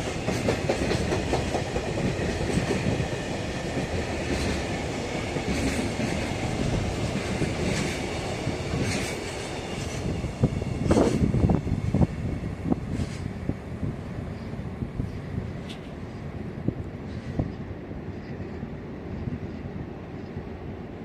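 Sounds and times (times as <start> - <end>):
freight train wheels clattering: 0.0 - 12.2.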